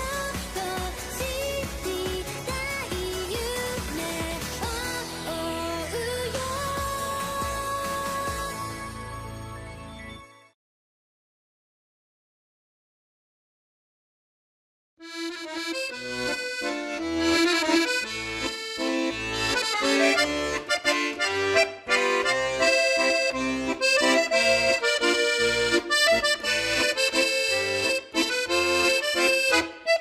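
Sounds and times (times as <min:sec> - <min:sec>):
busy melody of quick notes: 0:15.0 - 0:30.0.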